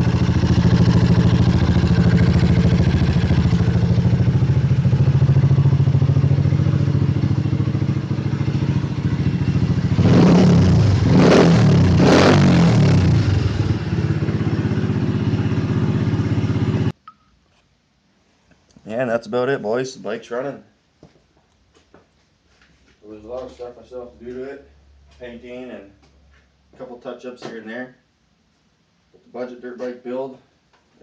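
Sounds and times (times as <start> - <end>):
dirt bike engine idling and revving: 0.0 - 16.9.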